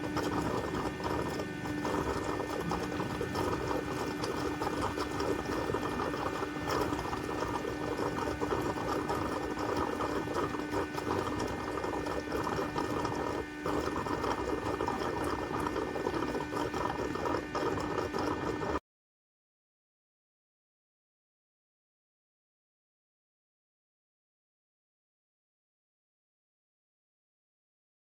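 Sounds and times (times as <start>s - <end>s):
robot vacuum motor whirring: 0.0s - 18.8s.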